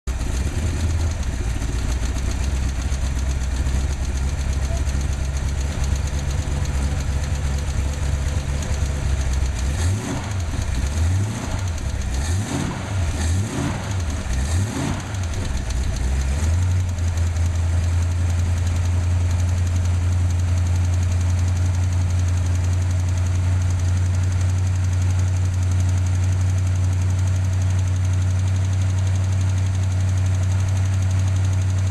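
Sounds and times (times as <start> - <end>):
engine revving: 0.1 - 17.3
ticking engine idling: 0.1 - 31.9.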